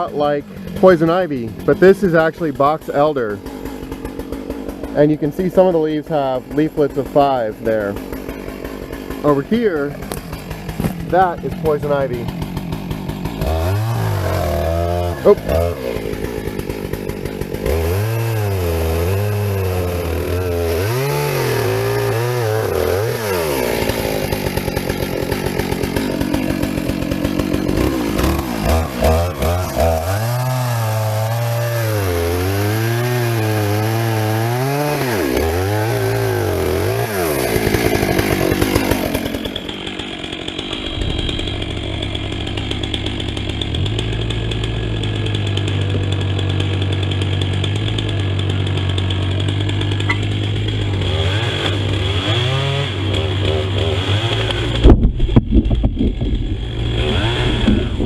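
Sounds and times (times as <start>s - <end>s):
chainsaw revving: 0.0s - 58.0s.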